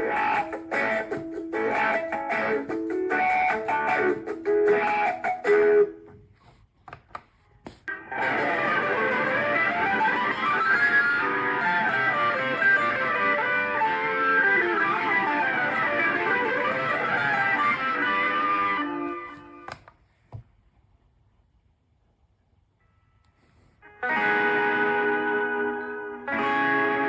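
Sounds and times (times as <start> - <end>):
electric guitar fast runs: 8.1 - 18.8.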